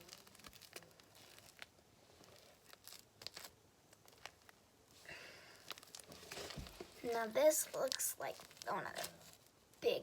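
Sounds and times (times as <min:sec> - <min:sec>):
slime clicking and crackling: 0:00.0 - 0:04.6, 0:07.1 - 0:09.4.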